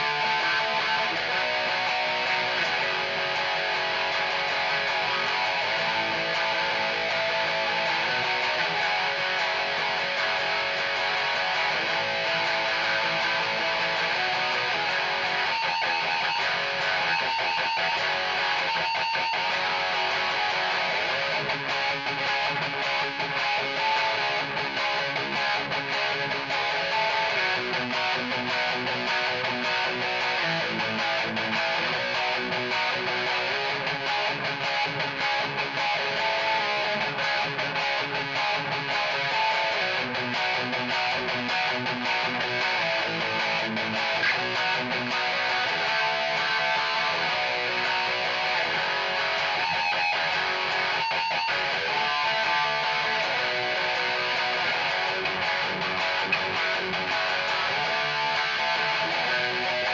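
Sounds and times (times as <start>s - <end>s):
distorted electric guitar riffing: 0.0s - 59.9s.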